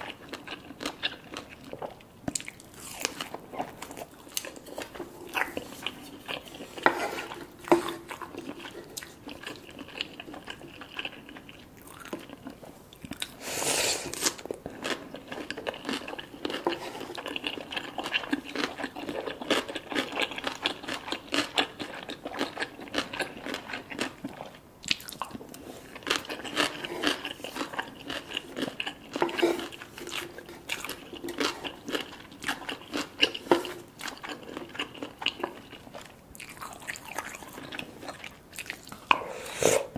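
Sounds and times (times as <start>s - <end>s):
person chewing crunchy food: 0.0s - 39.9s.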